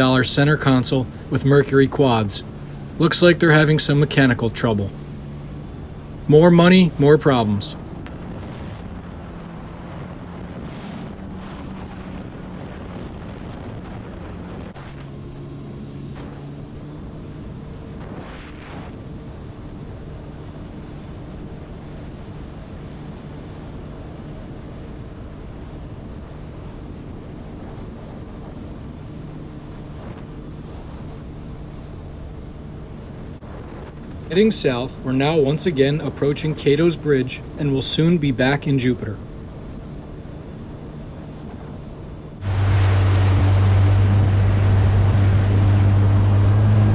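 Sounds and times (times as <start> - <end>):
jet ski engine running: 0.0 - 9.0, 42.4 - 46.9
water rushing past: 42.4 - 46.9.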